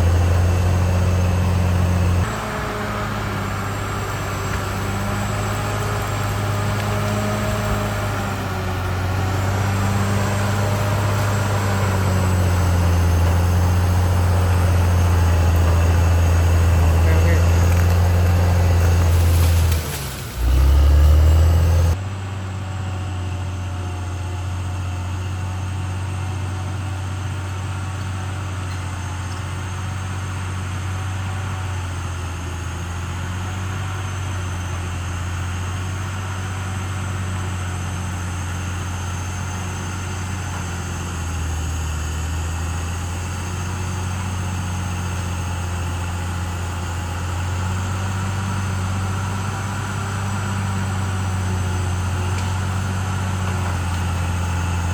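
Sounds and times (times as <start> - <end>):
bulldozer diesel engine humming: 0.0 - 54.9.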